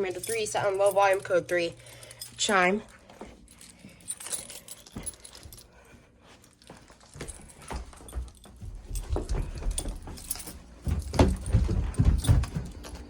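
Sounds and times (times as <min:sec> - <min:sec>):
footsteps: 0:00.0 - 0:13.0
handling knocks: 0:09.0 - 0:13.0.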